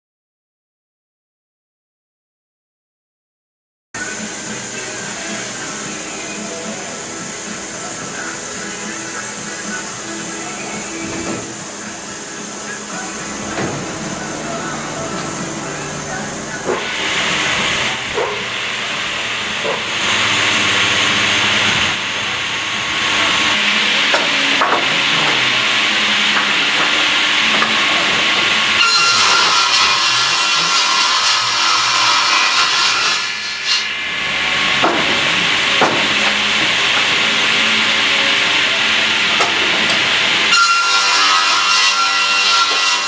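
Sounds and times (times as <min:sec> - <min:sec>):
saw cutting timber: 0:04.0 - 0:43.0.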